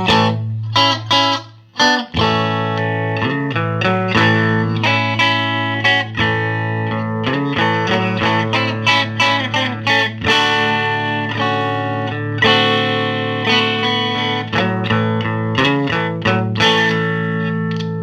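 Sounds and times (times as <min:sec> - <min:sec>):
electric guitar notes and chords: 0:00.0 - 0:18.0.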